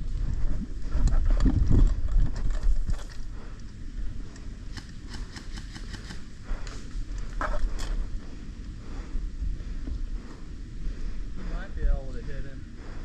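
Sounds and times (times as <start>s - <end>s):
microphone handling rumble: 0.0s - 3.3s.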